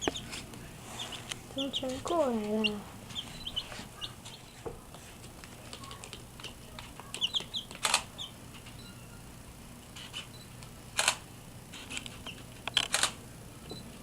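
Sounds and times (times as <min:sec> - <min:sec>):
birds chirping: 0:00.0 - 0:04.7, 0:07.0 - 0:09.2.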